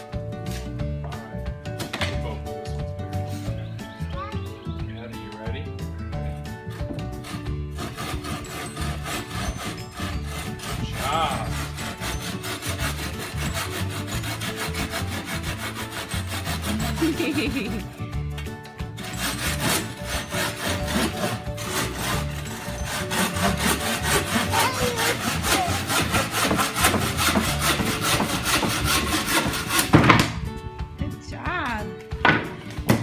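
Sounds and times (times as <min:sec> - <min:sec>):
saw cutting wood: 0:06.2 - 0:18.1, 0:18.8 - 0:30.4.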